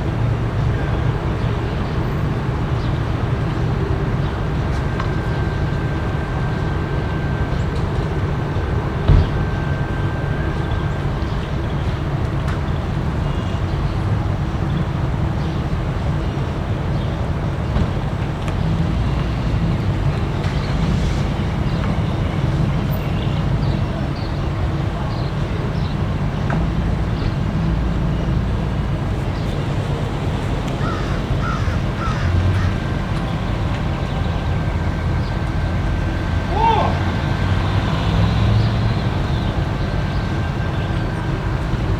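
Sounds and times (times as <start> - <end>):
low rumble of vehicles: 0.0 - 41.9
short high calls: 36.5 - 37.0.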